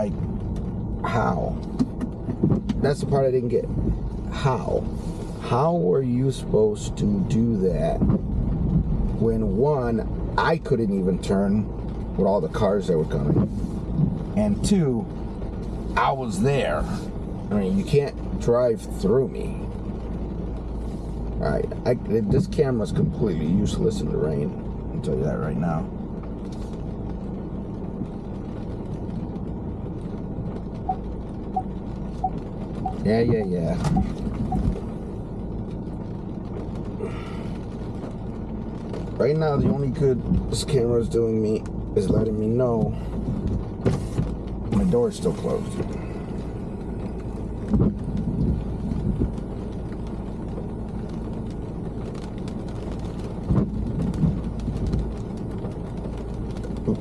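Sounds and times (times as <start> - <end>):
car road and engine rumble: 0.0 - 57.0
rain ticking on car: 0.0 - 57.0
sudden thumps: 1.6 - 3.1, 7.8 - 9.0, 30.9 - 35.0
short electronic tones: 31.6 - 34.7.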